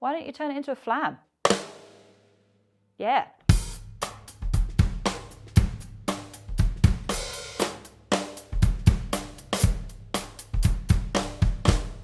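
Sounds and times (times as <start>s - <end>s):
drum kit groove: 1.4s - 2.2s, 3.5s - 12.0s.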